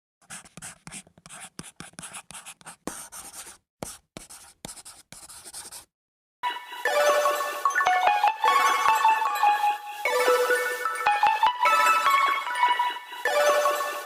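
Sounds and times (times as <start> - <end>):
music: 6.4 - 14.0.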